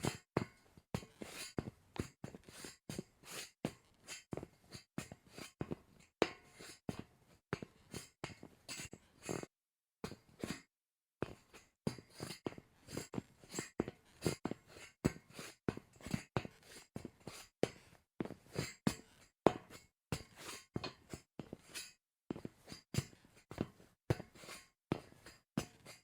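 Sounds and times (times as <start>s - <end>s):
footsteps on metal grate: 16.4s - 22.8s.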